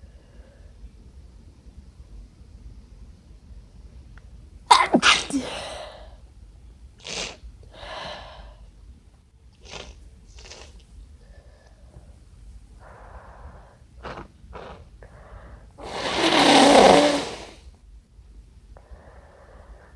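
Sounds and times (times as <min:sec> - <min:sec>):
person sneezing loudly: 0:04.7 - 0:06.0
person sniffing and breathing: 0:12.8 - 0:17.6.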